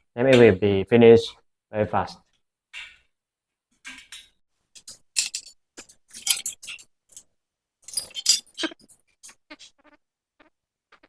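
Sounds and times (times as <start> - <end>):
metal parts clinking: 4.8 - 7.2, 7.8 - 9.0.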